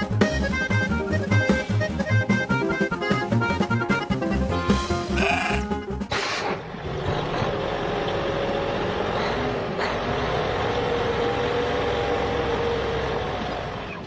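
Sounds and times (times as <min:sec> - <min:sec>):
truck engine running: 0:06.5 - 0:14.0.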